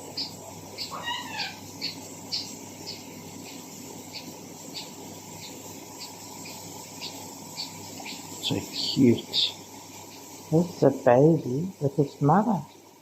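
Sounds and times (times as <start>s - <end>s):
small birds chirping: 0.0s - 13.0s
bird twittering call: 0.1s - 10.4s.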